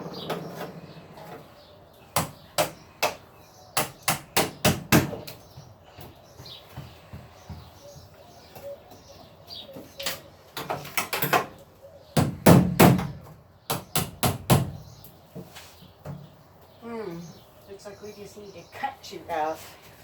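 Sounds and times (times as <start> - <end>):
knocks and bangs on wall panel: 3.8 - 5.7, 12.2 - 14.8.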